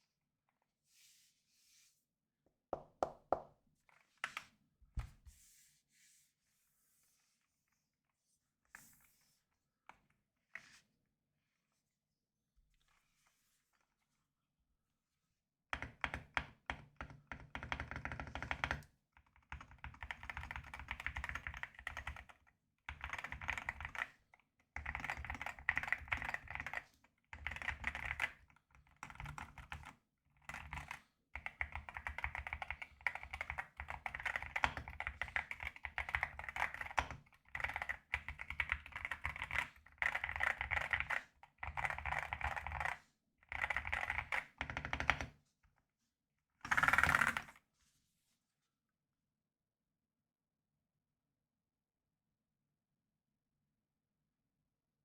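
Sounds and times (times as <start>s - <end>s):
mechanical keyboard typing: 19.5s - 22.3s, 22.9s - 24.2s, 24.8s - 26.8s, 27.4s - 45.3s, 46.6s - 47.6s.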